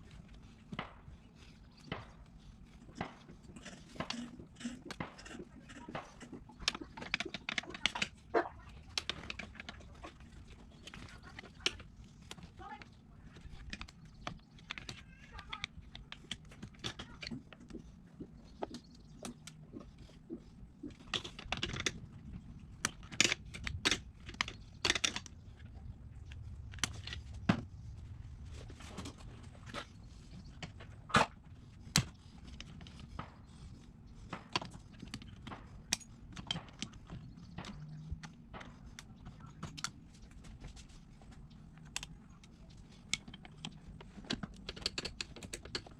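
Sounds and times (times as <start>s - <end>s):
low background hum: 0.0s - 45.9s
tools and metal parts clicking: 20.9s - 25.7s, 34.2s - 40.3s, 41.8s - 45.9s.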